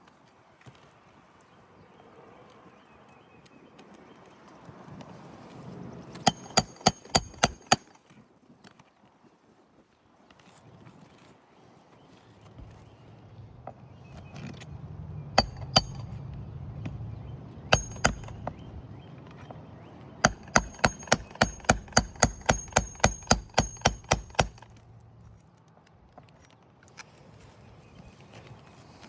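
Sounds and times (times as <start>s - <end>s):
hammer striking metal: 6.3s - 8.0s, 15.4s - 16.2s, 17.7s - 18.6s, 20.2s - 24.7s.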